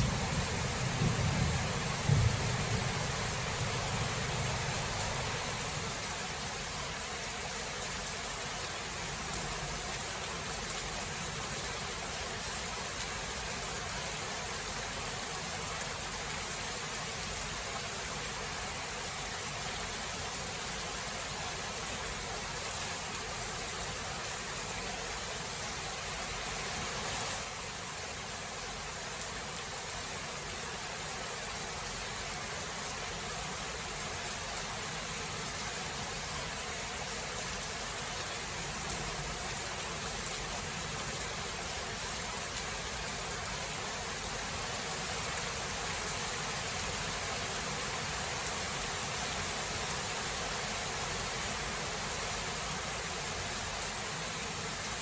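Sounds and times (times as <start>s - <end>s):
low thunder rumble: 0.0s - 4.8s
steady rain: 0.0s - 55.0s.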